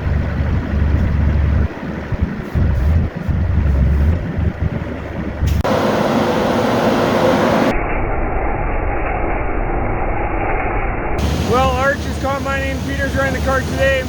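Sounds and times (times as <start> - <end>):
farm machinery running: 0.0 - 7.7, 11.2 - 14.0.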